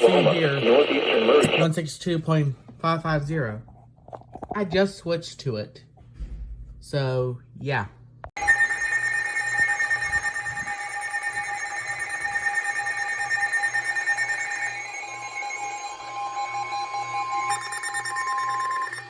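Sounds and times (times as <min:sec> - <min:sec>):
electronic alarm tone: 0:08.4 - 0:19.0.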